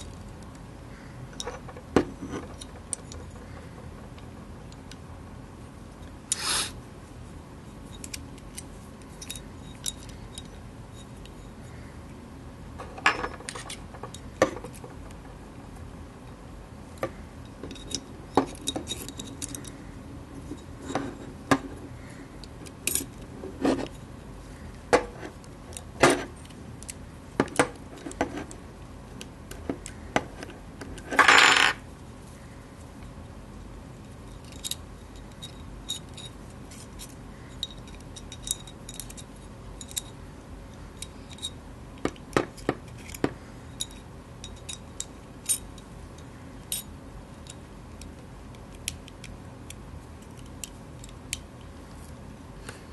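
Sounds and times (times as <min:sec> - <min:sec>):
metal parts clinking: 0:07.9 - 0:11.4, 0:12.8 - 0:15.2, 0:17.5 - 0:19.8, 0:22.6 - 0:24.0, 0:31.0 - 0:31.8, 0:34.2 - 0:40.2, 0:41.0 - 0:45.8.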